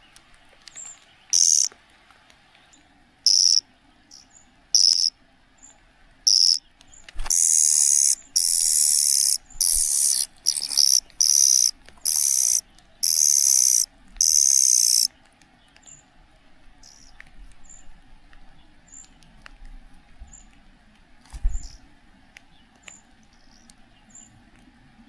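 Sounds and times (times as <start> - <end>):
bird chick begging calls: 1.4 - 1.7, 3.3 - 3.6, 4.8 - 5.1, 6.3 - 6.6, 7.2 - 15.1.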